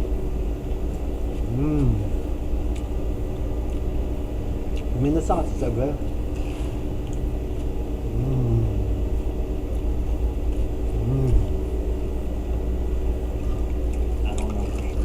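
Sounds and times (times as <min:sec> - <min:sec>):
short hums: 0:01.5 - 0:02.2, 0:08.0 - 0:09.3, 0:10.9 - 0:11.7.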